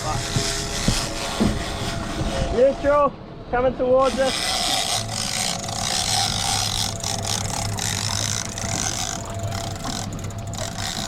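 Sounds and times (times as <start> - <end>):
wind and water hiss: 0.0 - 11.0
outboard motor idling: 4.0 - 11.0.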